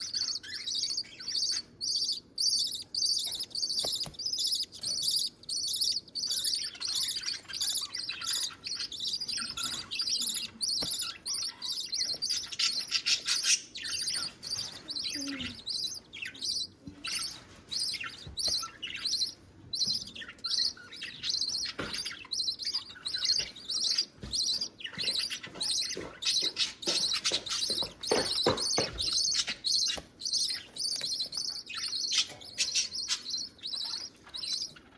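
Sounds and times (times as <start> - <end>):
chicks chirping: 0.0 - 34.9.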